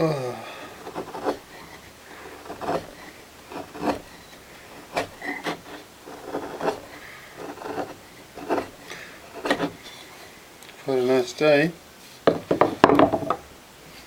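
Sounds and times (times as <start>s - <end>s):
wood being rasped by hand: 0.0s - 10.0s.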